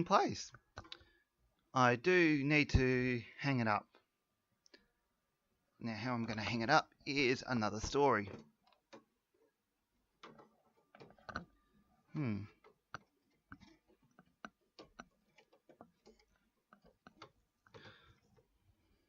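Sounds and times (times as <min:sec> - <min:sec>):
computer parts clicking and knocking: 0:00.5 - 0:01.2, 0:06.2 - 0:19.0.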